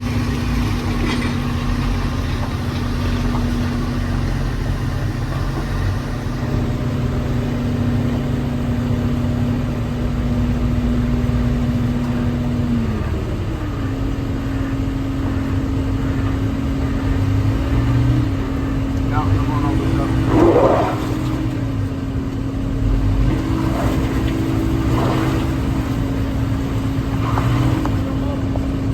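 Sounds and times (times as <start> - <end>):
heavy machine engine running: 0.0 - 28.9.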